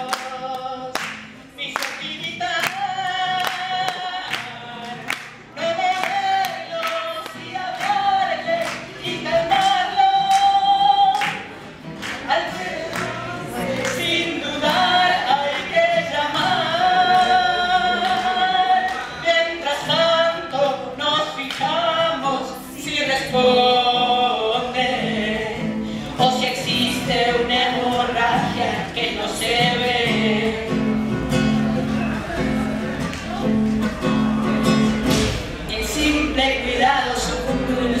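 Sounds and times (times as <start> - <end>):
voices singing together: 0.0 - 33.3, 35.0 - 38.0
sharp percussive beats: 34.7 - 36.3.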